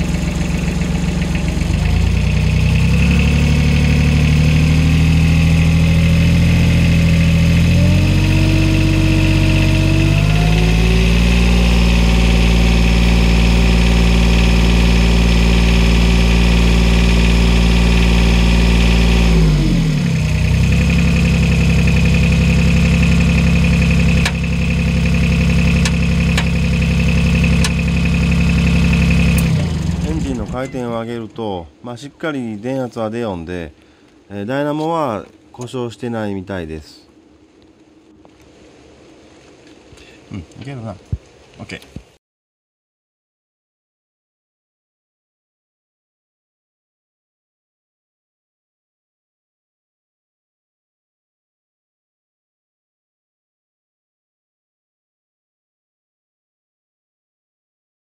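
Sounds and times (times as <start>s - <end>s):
excavator engine revving: 0.0s - 31.4s.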